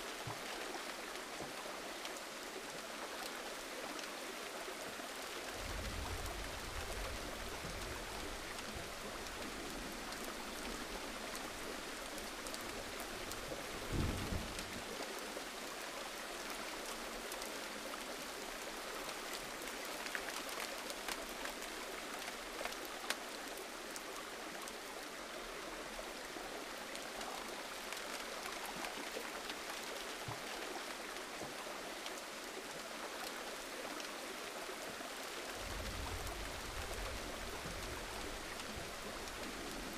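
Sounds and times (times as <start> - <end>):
gentle rain hiss: 0.0 - 39.9
raindrops ticking: 5.6 - 14.8, 35.4 - 39.9.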